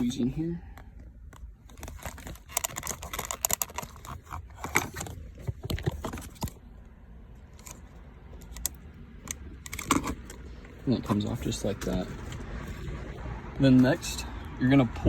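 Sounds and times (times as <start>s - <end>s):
plastic connector clicks and rattles: 1.3s - 6.6s, 8.4s - 10.5s.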